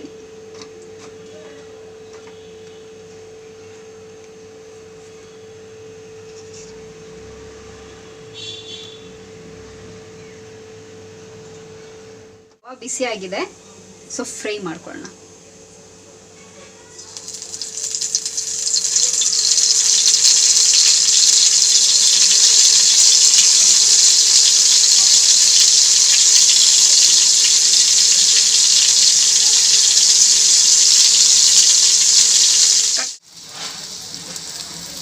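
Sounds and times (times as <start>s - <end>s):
food sizzling in oil: 17.0s - 35.0s.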